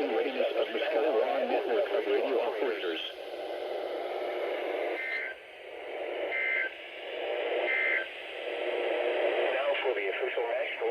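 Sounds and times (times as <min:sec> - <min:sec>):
radio hiss: 0:00.0 - 0:10.9.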